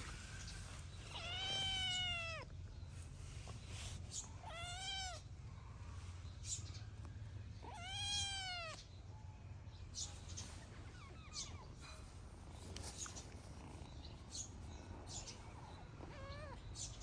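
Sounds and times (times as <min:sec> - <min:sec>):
cats meowing: 0:01.0 - 0:02.6, 0:04.4 - 0:05.3, 0:07.6 - 0:08.9, 0:10.5 - 0:17.0.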